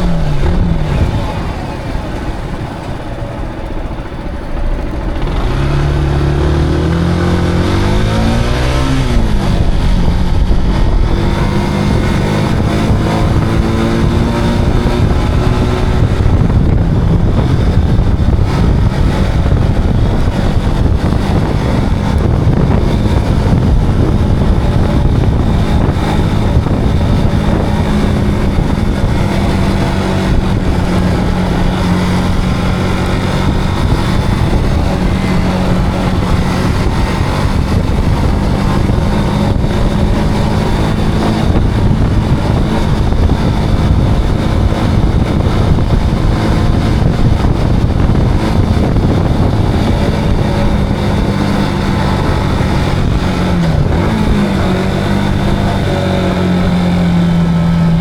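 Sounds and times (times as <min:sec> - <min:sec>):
motorcycle engine cruising: 0:00.0 - 0:58.0
wind rushing over microphone: 0:00.0 - 0:58.0.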